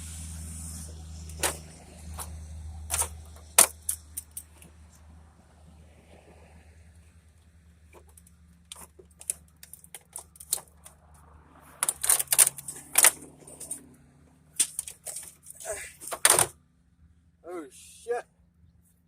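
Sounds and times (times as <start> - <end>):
plastic and metal parts clicking: 1.3 - 4.7, 7.9 - 11.0, 11.8 - 13.8, 14.6 - 16.5
knocks and rattling: 1.3 - 4.8, 11.8 - 13.8, 14.5 - 16.6.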